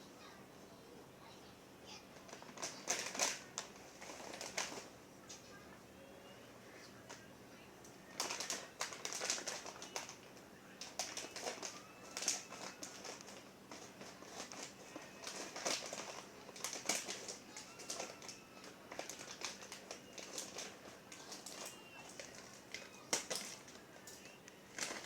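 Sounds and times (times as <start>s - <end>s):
packaging crackling: 2.2s - 4.9s, 8.1s - 25.0s
popcorn crunching: 2.2s - 4.9s, 7.8s - 25.0s.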